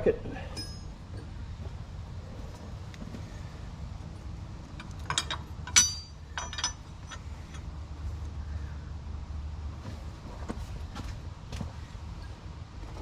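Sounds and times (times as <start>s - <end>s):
metal parts clinking: 4.8s - 7.7s.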